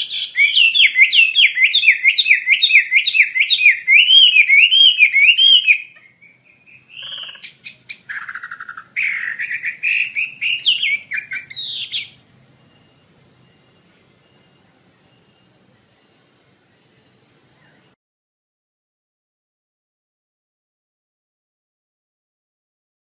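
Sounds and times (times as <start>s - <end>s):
bird singing loudly: 0.0s - 18.0s.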